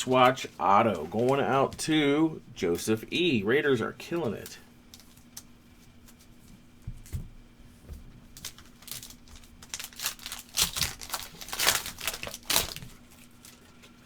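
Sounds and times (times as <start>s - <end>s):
wrapper crinkling and tearing: 8.3s - 14.0s.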